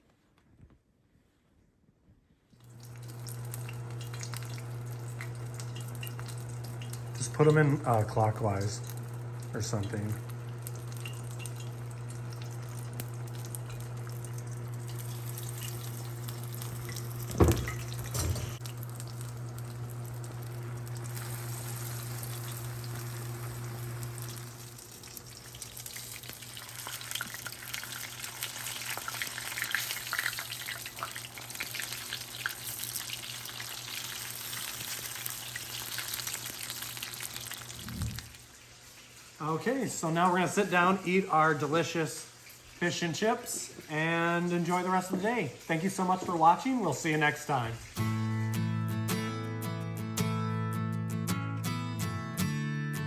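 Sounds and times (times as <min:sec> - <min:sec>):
food frying in hot oil: 0:02.6 - 0:48.0.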